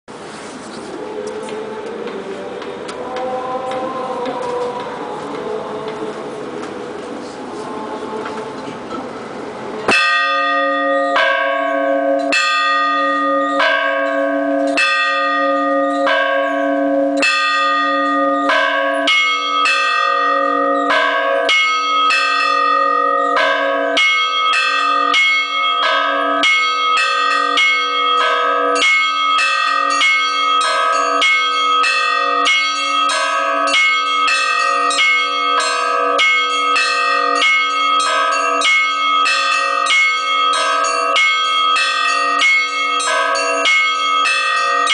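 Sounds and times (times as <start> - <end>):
bell struck slowly: 9.9 - 44.9
higher bells rhythmic peal: 9.9 - 44.9.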